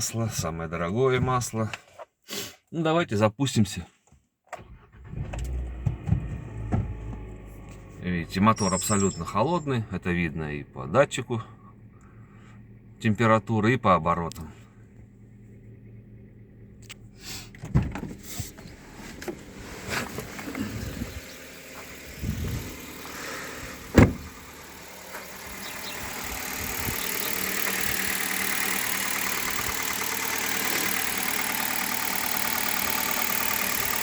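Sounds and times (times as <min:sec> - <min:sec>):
car engine idling: 0:04.7 - 0:34.0
thumps: 0:23.8 - 0:24.4.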